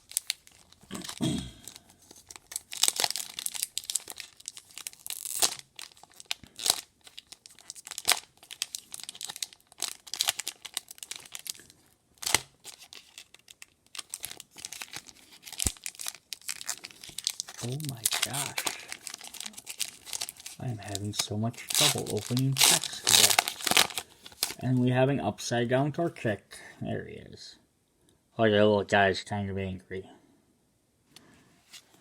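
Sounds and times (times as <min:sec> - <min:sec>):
foil pack crinkling and tearing: 0:00.0 - 0:24.7.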